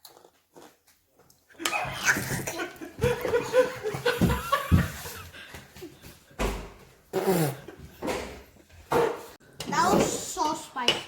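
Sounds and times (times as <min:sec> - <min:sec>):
people laughing: 0:01.9 - 0:06.0.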